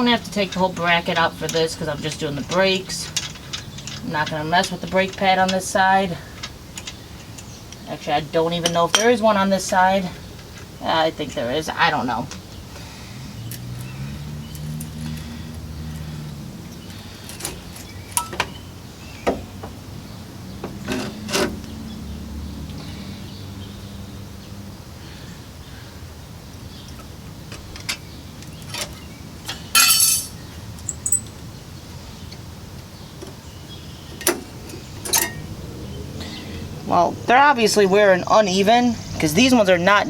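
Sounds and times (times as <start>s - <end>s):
metal clicks of tools and parts: 28.6s - 31.4s, 35.0s - 35.4s
metallic rattle: 28.7s - 31.4s.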